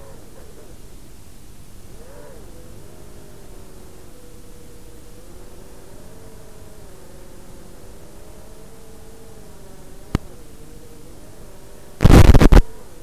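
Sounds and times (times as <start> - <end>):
drone motors whining: 0.0 - 13.0
steady hiss: 0.0 - 13.0
loud distorted noise burst: 12.0 - 12.6.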